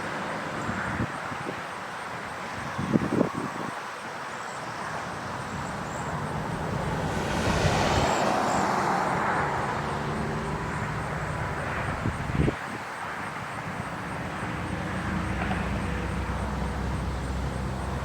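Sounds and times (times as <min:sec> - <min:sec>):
vehicle passing: 0:05.4 - 0:18.0.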